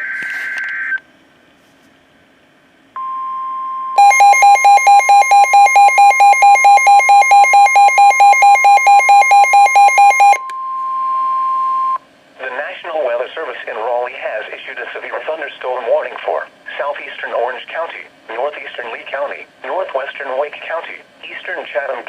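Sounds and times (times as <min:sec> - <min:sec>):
pulsing alert beeps: 0:04.0 - 0:10.4
steady warning alarm tone: 0:04.0 - 0:10.4.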